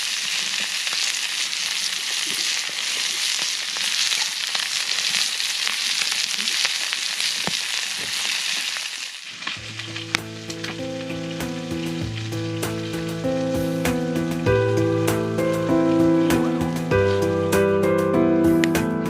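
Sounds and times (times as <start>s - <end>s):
food sizzling in a skillet: 0.0s - 18.6s
background music: 9.6s - 19.0s.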